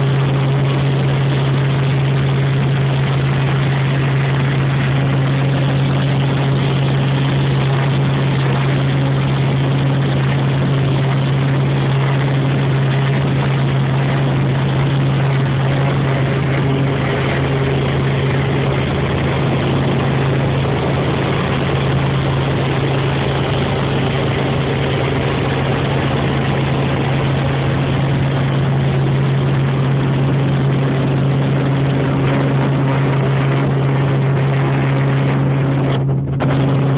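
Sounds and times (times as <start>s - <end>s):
helicopter engine and rotor drone: 0.0s - 36.9s.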